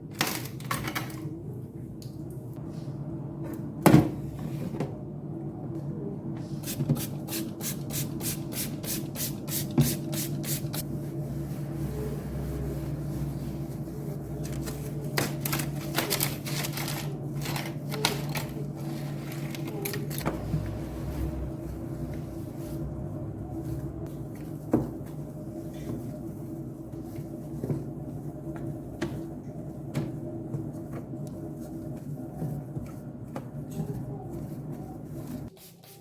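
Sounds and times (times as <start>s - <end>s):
steady low hum: 1.6s - 16.0s, 17.1s - 35.6s.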